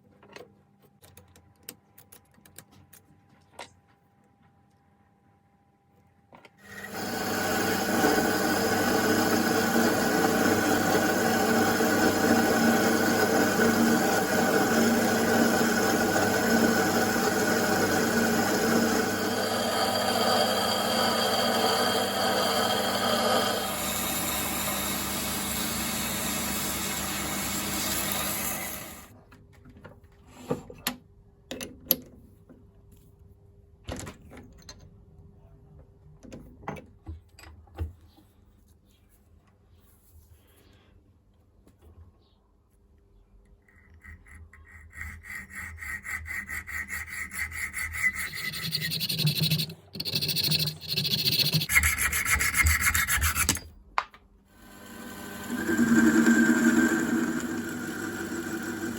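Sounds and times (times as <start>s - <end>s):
metal lathe motor whine: 6.7s - 29.1s, 54.6s - 58.9s.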